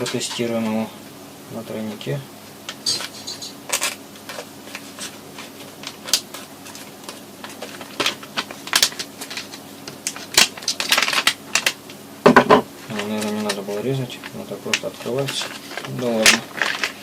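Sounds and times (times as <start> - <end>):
plastic packaging crackling: 2.9 - 12.0, 12.8 - 17.0.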